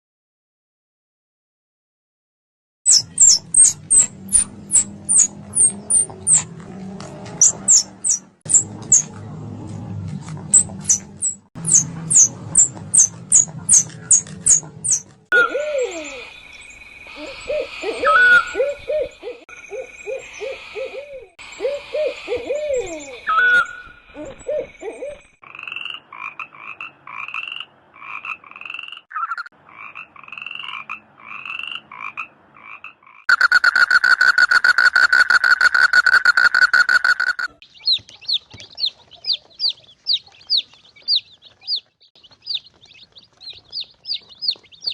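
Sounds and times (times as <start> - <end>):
rapid high-pitched animal squeaks: 10.5 - 15.5.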